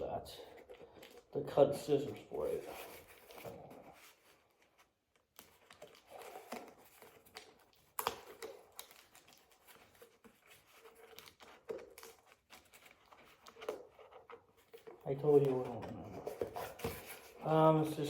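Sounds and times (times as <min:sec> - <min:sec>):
cardboard box rustling: 0:00.4 - 0:18.0
packing tape clicks: 0:05.2 - 0:14.9.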